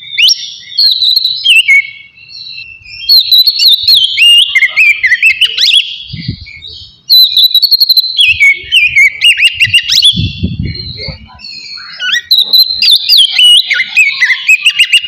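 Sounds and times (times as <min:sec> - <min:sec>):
bird singing whistled phrases: 0:00.0 - 0:15.0.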